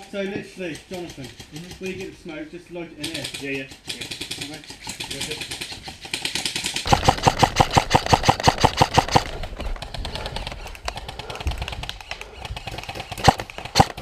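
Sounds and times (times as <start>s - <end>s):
airsoft gun shots: 6.9s - 9.4s, 12.7s - 14.0s.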